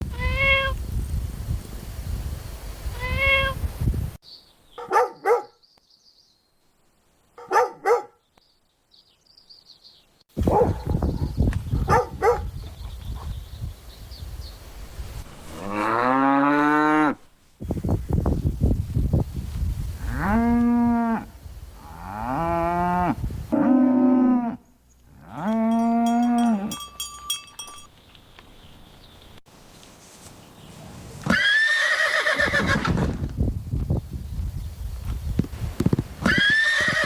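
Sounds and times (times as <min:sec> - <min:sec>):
cow mooing: 0:15.5 - 0:17.2, 0:20.1 - 0:26.8.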